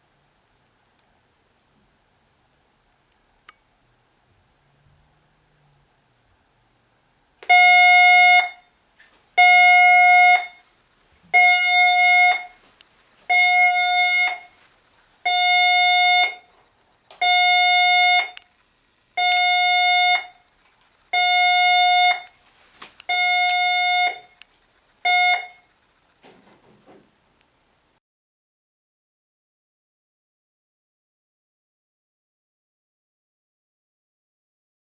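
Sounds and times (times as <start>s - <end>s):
fire alarm electronic tone: 7.4s - 8.8s, 9.4s - 10.7s, 11.3s - 18.5s, 19.2s - 20.5s, 21.1s - 22.4s, 23.0s - 24.4s, 25.0s - 25.8s.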